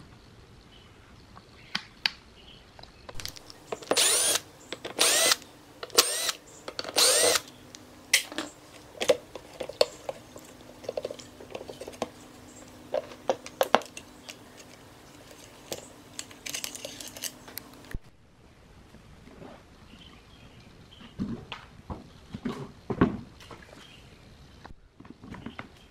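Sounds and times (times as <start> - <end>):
power drill running: 3.8 - 7.5.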